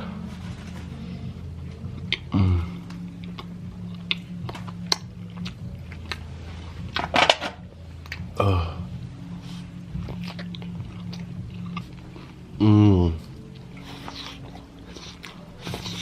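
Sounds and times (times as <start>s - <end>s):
steady low hum: 0.0s - 16.0s
person chewing with mouth smacks: 1.9s - 7.0s, 8.0s - 8.4s, 9.4s - 16.0s.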